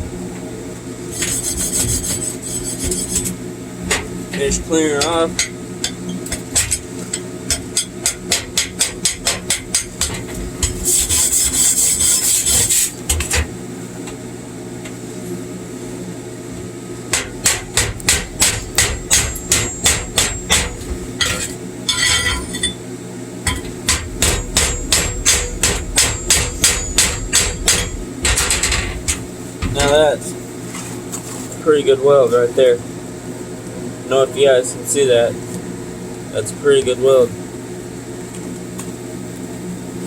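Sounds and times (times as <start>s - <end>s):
scratchy scraping across metal: 1.1s - 3.4s, 10.6s - 13.0s
chipping hammer striking metal: 17.1s - 22.8s, 23.4s - 30.0s.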